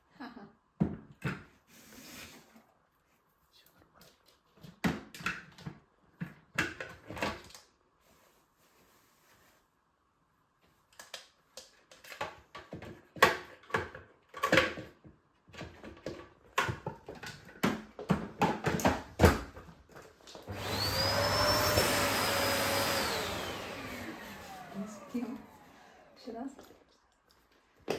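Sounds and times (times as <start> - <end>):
vacuum cleaner motor whine: 20.4 - 26.4.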